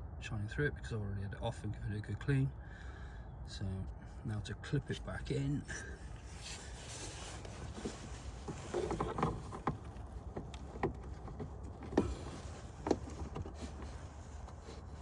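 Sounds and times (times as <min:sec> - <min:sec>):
rubbing and rustling: 0:06.1 - 0:15.0.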